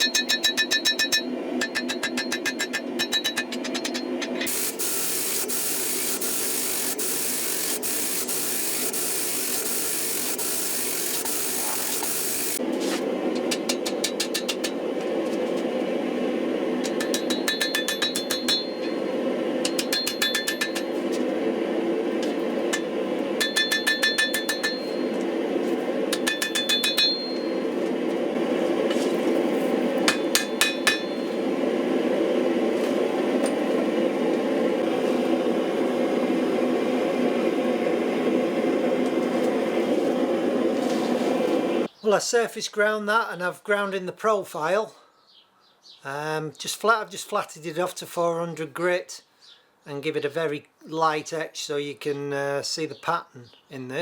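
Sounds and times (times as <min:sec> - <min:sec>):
hammer striking steel on anvil: 0:00.0 - 0:04.6, 0:13.4 - 0:14.8, 0:16.8 - 0:21.1, 0:22.7 - 0:25.4, 0:26.1 - 0:27.8, 0:30.0 - 0:31.6
steady hum: 0:01.4 - 0:41.9
loud steady hiss: 0:04.5 - 0:12.6.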